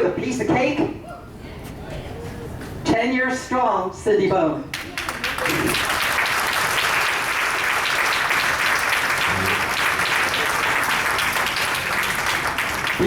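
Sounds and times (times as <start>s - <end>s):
crowd applauding: 4.7s - 13.0s.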